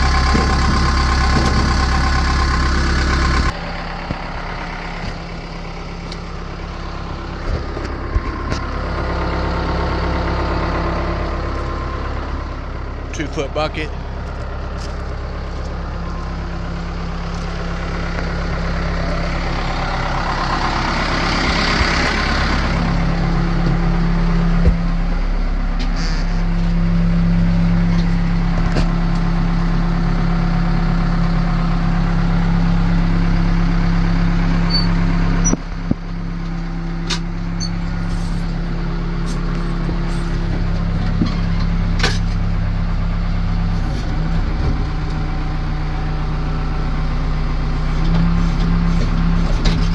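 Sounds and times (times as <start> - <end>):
backhoe diesel engine running: 0.0 - 49.9
sharp knocks and clanks: 0.1 - 2.6.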